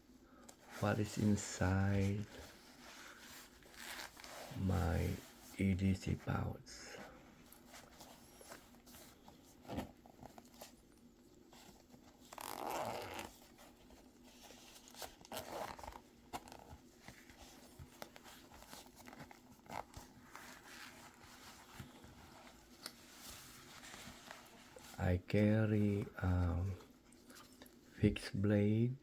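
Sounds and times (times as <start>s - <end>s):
zipper being drawn open: 12.3s - 13.3s, 15.2s - 16.6s.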